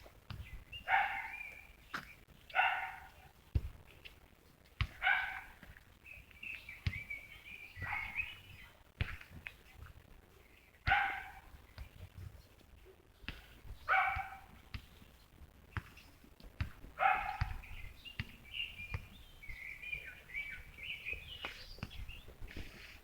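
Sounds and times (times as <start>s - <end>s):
small bird singing: 0.3s - 3.3s, 5.0s - 8.8s, 13.6s - 16.3s, 17.0s - 23.0s
dog barking: 0.8s - 1.4s, 2.5s - 3.3s, 5.0s - 5.6s, 7.8s - 8.2s, 10.9s - 11.5s, 13.9s - 14.5s, 17.0s - 17.6s.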